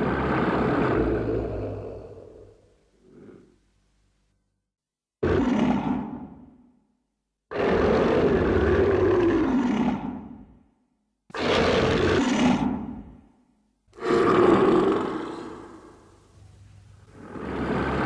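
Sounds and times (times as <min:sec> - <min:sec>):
monster roar: 0:00.0 - 0:03.5, 0:14.0 - 0:16.0.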